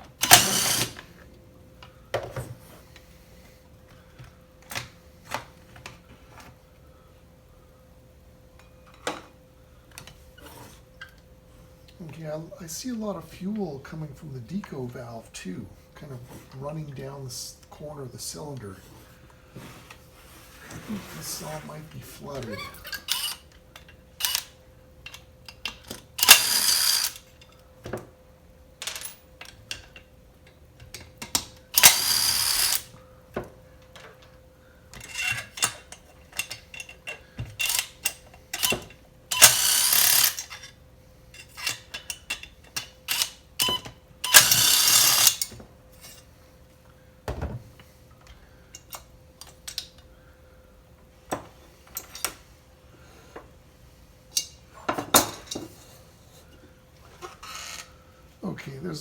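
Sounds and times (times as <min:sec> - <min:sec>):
tools and metal parts clinking: 0:00.2 - 0:01.0, 0:22.4 - 0:27.6, 0:28.8 - 0:30.1, 0:30.8 - 0:32.9, 0:34.9 - 0:46.3, 0:54.3 - 0:56.0
power tool bursts: 0:00.2 - 0:01.1, 0:26.2 - 0:27.2, 0:31.8 - 0:32.9, 0:39.3 - 0:40.5, 0:43.1 - 0:45.4.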